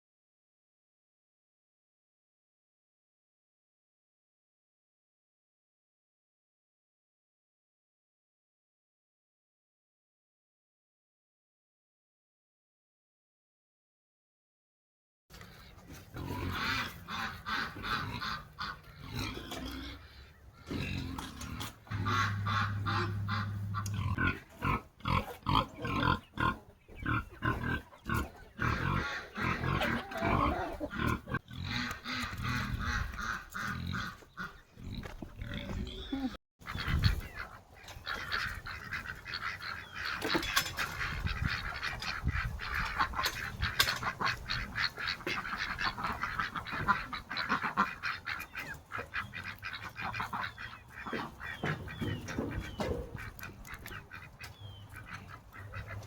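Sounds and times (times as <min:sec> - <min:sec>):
ducks quacking: 0:15.3 - 0:56.0
geese honking: 0:15.4 - 0:56.0.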